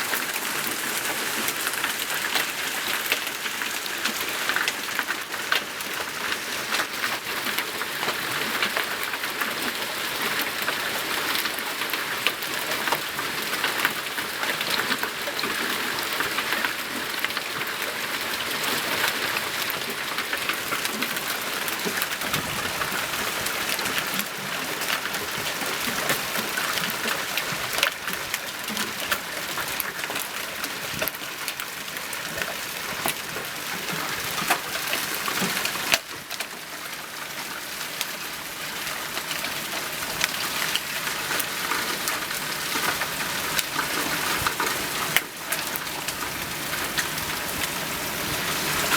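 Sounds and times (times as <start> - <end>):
hailstones clattering: 0.0 - 9.2, 19.0 - 48.9
hiss of falling precipitation: 0.0 - 48.9.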